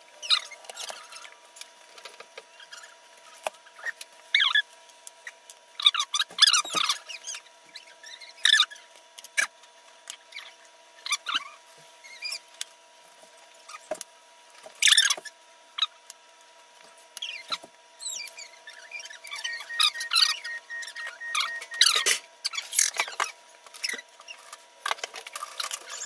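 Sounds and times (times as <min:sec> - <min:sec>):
faint steady hum: 0:15.4 - 0:22.6.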